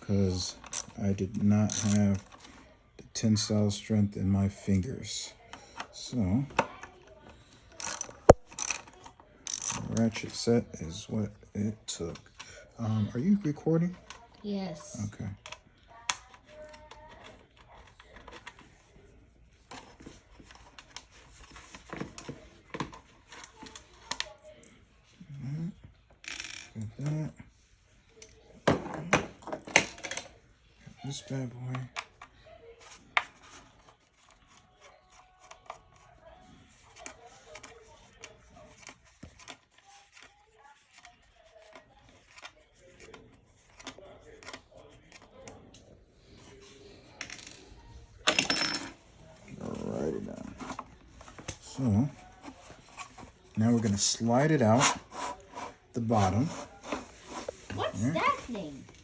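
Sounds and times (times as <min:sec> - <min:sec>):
tools clicking and rubbing on metal: 0:00.4 - 0:02.5, 0:07.7 - 0:10.5, 0:48.3 - 0:57.8.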